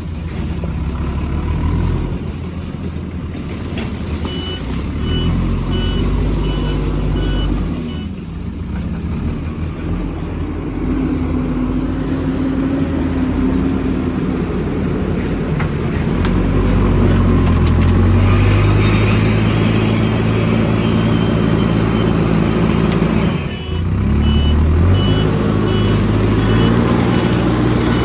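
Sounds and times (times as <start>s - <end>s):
heavy diesel engine under load: 0.0s - 28.0s
back-up alarm beeping: 4.2s - 8.2s, 23.3s - 28.0s.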